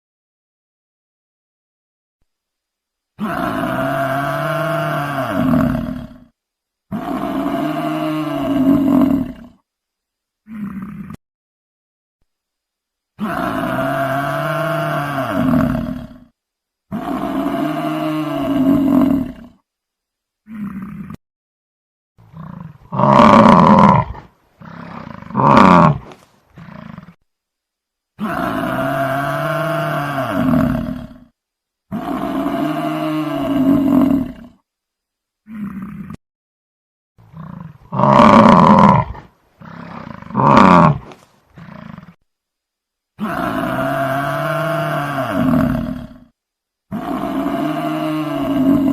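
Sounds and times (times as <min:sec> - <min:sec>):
buffalo grunting: 0:22.3 - 0:27.2, 0:37.3 - 0:42.2.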